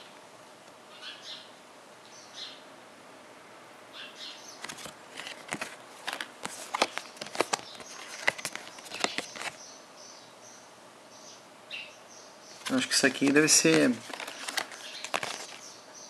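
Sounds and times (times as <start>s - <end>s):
cards being leafed through: 4.6s - 9.6s, 12.6s - 15.7s.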